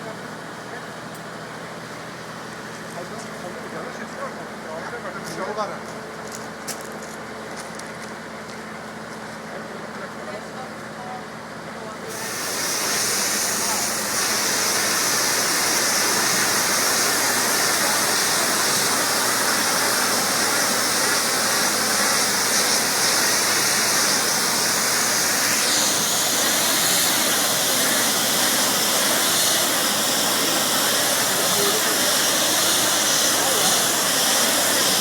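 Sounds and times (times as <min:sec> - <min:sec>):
high-pressure water jet hissing: 0:12.1 - 0:35.0.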